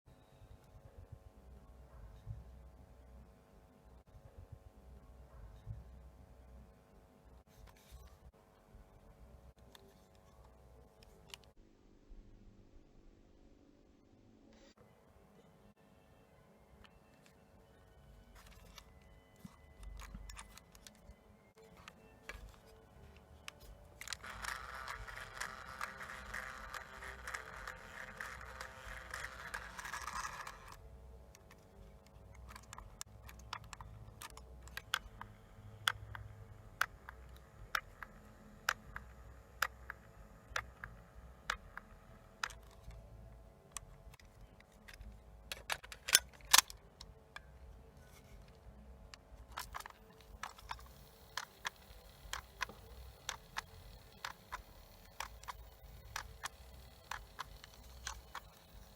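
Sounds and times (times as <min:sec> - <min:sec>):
small irregular clicks: 0:18.3 - 0:58.9.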